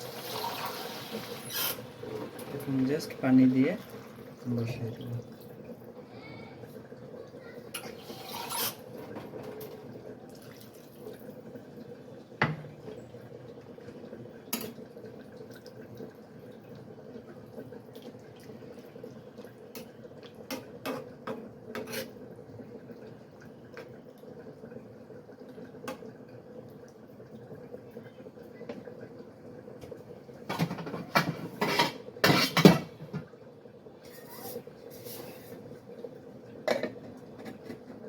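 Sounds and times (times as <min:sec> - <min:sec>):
pot and utensils clinking: 0:30.5 - 0:33.0.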